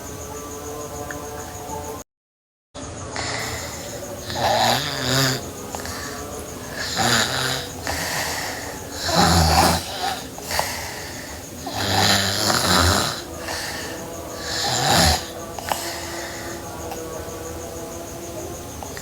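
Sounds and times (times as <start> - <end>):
girl snoring: 3.2 - 17.2, 18.6 - 19.0.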